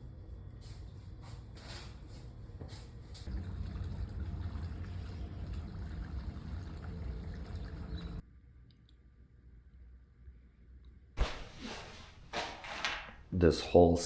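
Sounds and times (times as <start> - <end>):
water trickling: 3.3 - 8.2.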